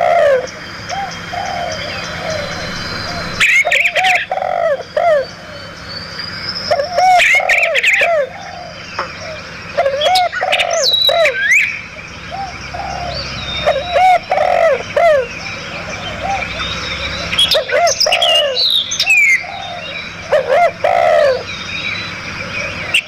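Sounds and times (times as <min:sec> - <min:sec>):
birds calling: 0:00.0 - 0:23.0
high bird chirps and whistles: 0:10.0 - 0:11.8.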